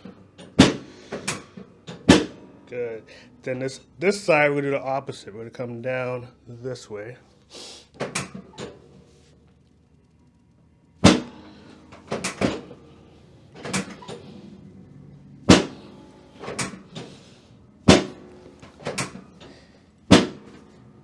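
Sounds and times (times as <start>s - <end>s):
table section dropping clunks: 0.0s - 2.5s, 11.0s - 12.8s, 13.5s - 14.4s, 15.5s - 20.9s.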